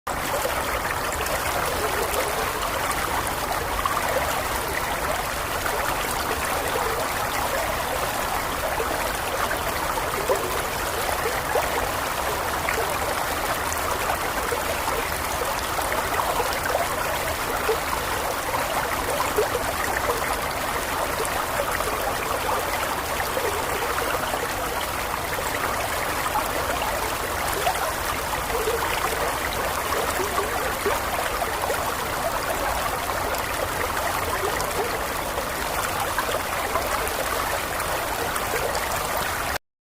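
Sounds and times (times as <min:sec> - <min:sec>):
water flowing and babbling: 0:00.1 - 0:39.6.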